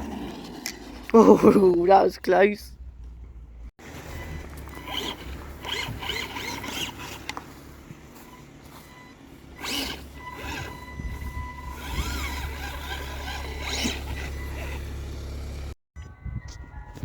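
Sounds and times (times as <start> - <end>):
toy car motor whirring: 3.9 - 7.4, 9.5 - 15.2.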